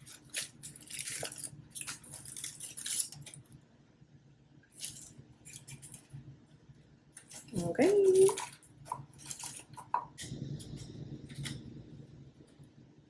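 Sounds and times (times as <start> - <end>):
low steady hum: 0.0 - 13.0
utensils scraping and clinking dishes: 7.2 - 11.6.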